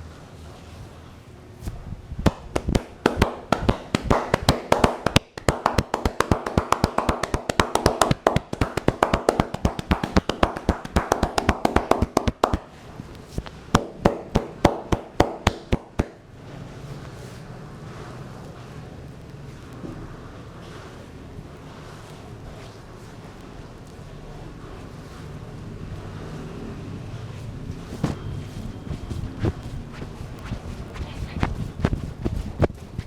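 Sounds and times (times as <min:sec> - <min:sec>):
hands tapping on head: 0:02.2 - 0:12.7, 0:13.4 - 0:16.2.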